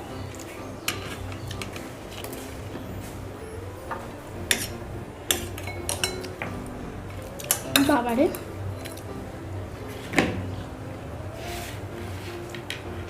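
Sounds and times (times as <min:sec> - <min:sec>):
spoon clinking against plates: 0:03.8 - 0:06.5, 0:07.3 - 0:09.1.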